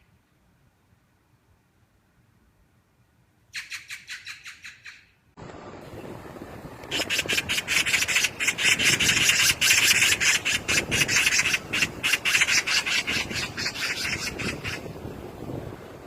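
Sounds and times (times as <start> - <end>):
magpie chattering: 6.9 - 14.8.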